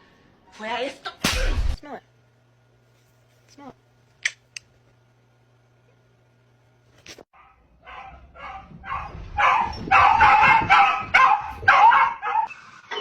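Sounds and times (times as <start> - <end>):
dog barking: 7.4 - 12.5.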